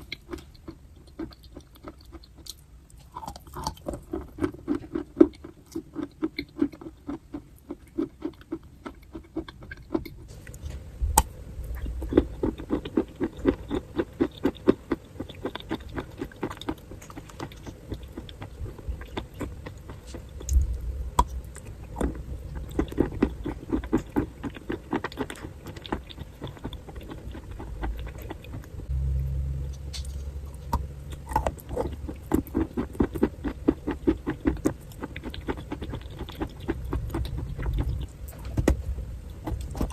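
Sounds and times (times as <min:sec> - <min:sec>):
crunchy chewing: 0:00.0 - 0:10.7, 0:11.6 - 0:28.9, 0:29.7 - 0:38.4
low thumps: 0:28.9 - 0:31.5.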